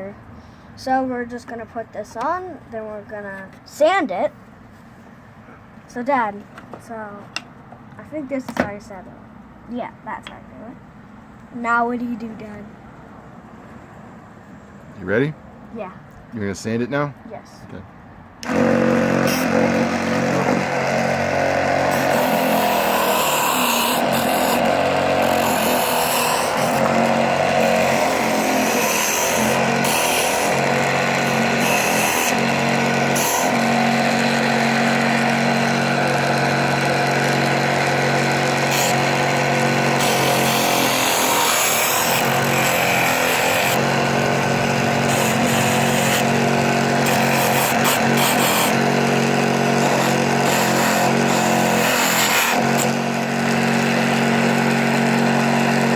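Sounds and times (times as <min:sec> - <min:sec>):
small electric motor running: 0:18.4 - 0:55.9
wood being sanded: 0:18.4 - 0:55.9.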